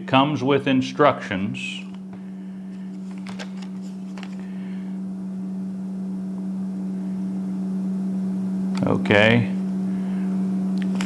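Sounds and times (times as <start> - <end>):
low electrical hum: 0.0 - 11.0
handling clicks and rustles: 2.8 - 4.5, 10.8 - 11.0.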